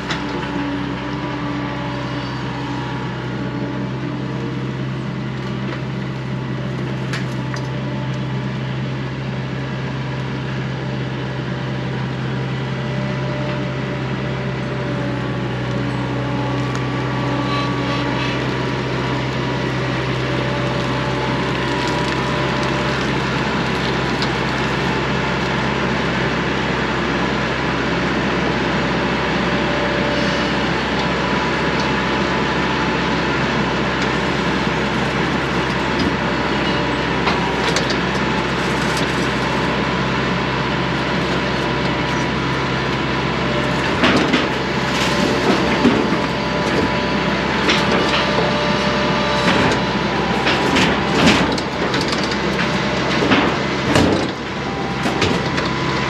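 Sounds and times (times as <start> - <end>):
knocks and clanks: 49.4 - 54.4.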